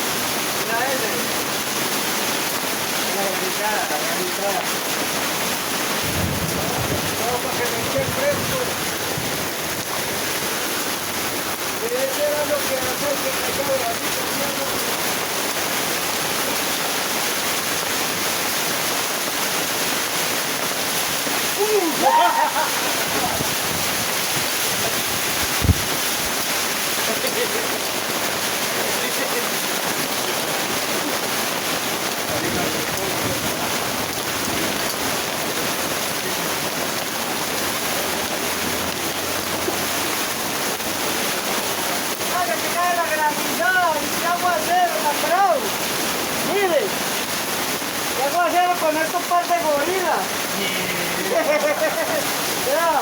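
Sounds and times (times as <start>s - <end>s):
heavy rain and hail: 0.0s - 53.0s.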